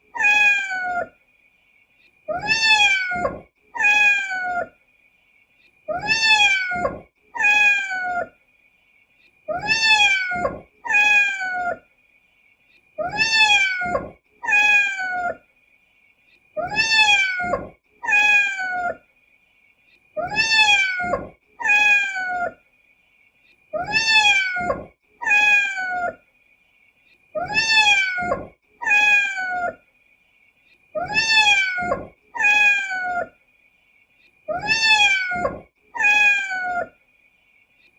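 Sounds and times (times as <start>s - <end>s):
cat meowing: 0.2s - 1.1s, 2.3s - 4.7s, 5.9s - 8.3s, 9.5s - 11.8s, 13.0s - 15.4s, 16.6s - 19.0s, 20.2s - 22.6s, 23.8s - 26.2s, 27.4s - 29.8s, 31.0s - 33.3s, 34.5s - 36.9s.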